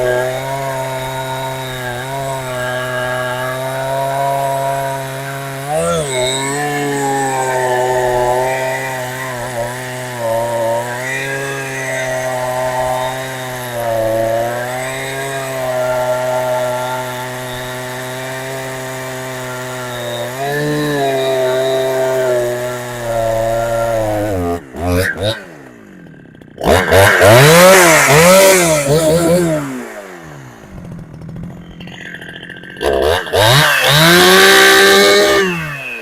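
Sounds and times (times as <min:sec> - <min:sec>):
chainsaw engine running fast: 0:00.0 - 0:36.0.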